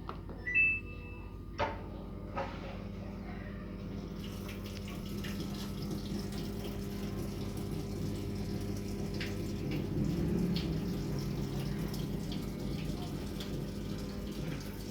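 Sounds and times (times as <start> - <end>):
water splashing into washing machine: 3.9 - 14.9.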